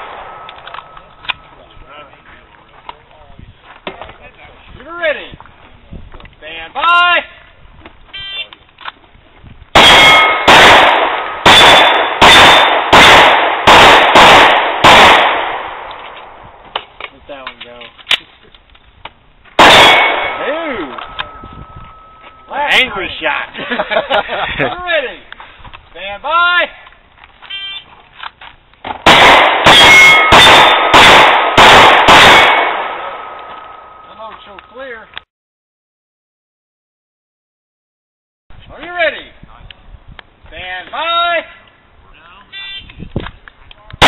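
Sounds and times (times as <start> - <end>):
pistol shots with echo: 9.8 - 16.4, 19.6 - 22.1, 29.0 - 34.0
steel plate ringing: 19.9 - 22.9, 29.8 - 30.8.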